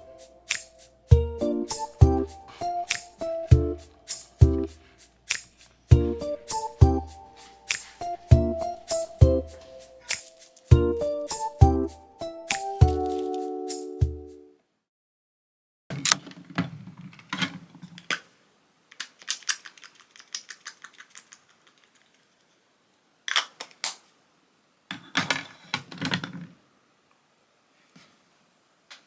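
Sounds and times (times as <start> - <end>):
computer keyboard typing: 12.8 - 13.5.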